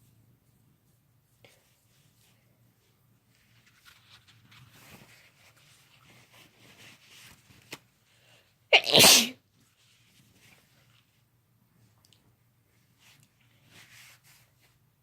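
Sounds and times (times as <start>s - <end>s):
woman sneezing: 8.7s - 9.4s.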